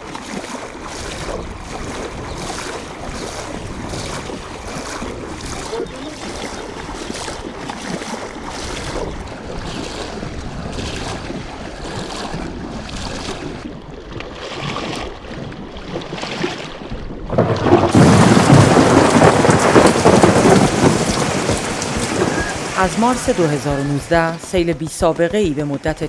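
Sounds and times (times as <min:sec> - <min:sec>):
water rushing: 0:00.0 - 0:26.0
wind: 0:00.0 - 0:26.0
thunder rumble: 0:17.3 - 0:24.1
heavy rain: 0:17.3 - 0:24.6.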